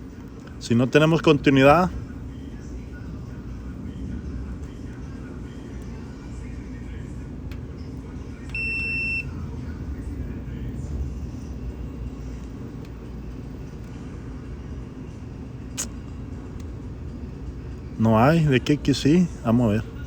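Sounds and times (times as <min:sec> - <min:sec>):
steady low hum: 0:00.0 - 0:20.0
multimeter beep: 0:08.5 - 0:09.4.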